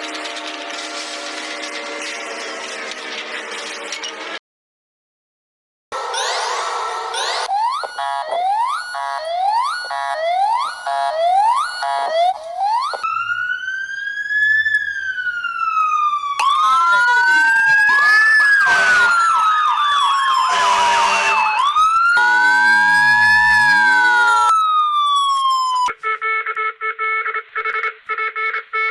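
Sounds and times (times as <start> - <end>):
steady alarm tone: 6.0 - 13.2, 16.3 - 24.8
electronic siren wailing: 6.0 - 26.2.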